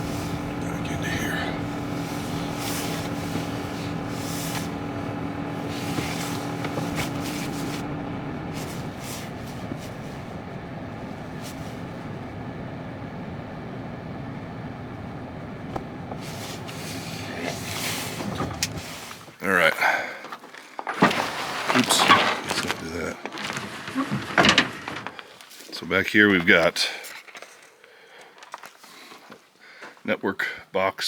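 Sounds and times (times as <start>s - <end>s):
vehicle motor humming: 0.0s - 19.2s.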